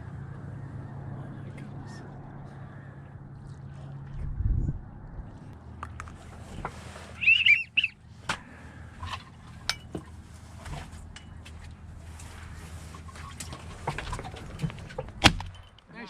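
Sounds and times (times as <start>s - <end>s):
warbling chirped whistle: 7.2s - 8.0s
sharp clicks and knocks: 13.4s - 15.9s.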